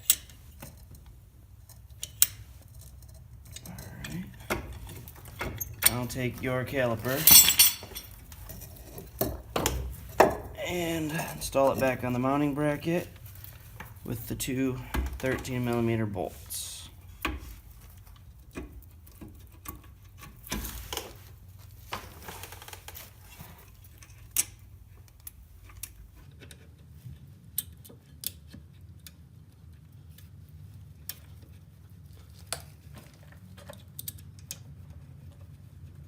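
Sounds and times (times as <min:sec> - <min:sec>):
metallic clicks of hand tools: 0:01.7 - 0:06.0.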